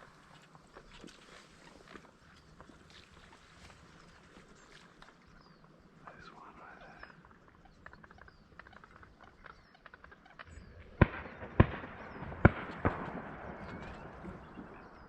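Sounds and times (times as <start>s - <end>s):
shotgun shots with echo: 10.8s - 15.0s.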